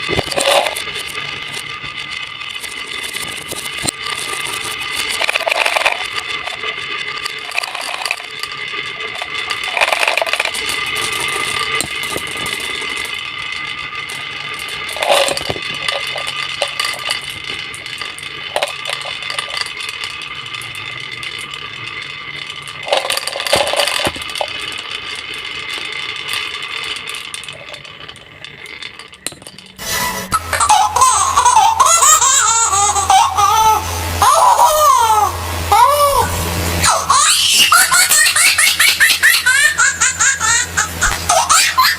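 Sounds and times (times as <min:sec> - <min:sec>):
marbles rolling and clattering: 0:00.0 - 0:41.9
steady ringing tones: 0:00.0 - 0:41.9.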